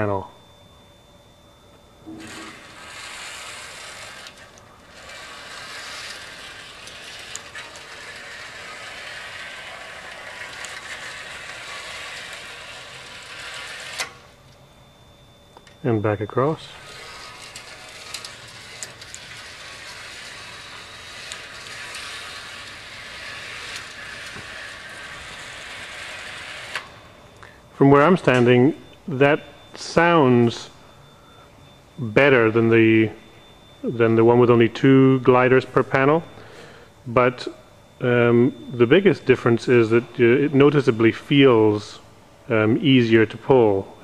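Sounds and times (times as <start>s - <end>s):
shade gliders rolling on track: 16.8s - 27.0s.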